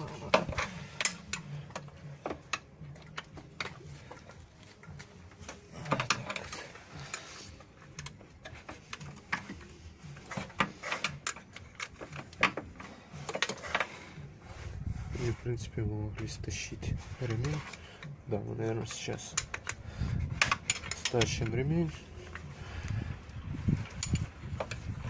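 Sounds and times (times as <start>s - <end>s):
wrench clicking on metal: 20.4s - 21.6s, 23.8s - 24.8s.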